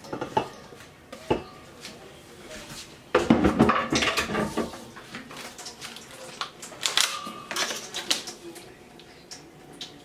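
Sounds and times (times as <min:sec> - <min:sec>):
kitchenware clattering against pot: 0:00.0 - 0:01.5, 0:03.2 - 0:05.8.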